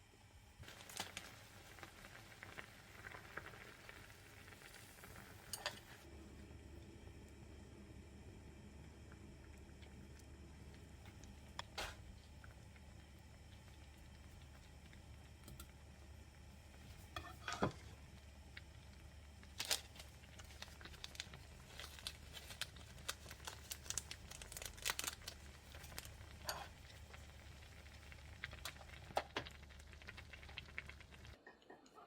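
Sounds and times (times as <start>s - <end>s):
low steady hum: 0.0s - 32.0s
crinkling and rustling: 19.4s - 27.3s.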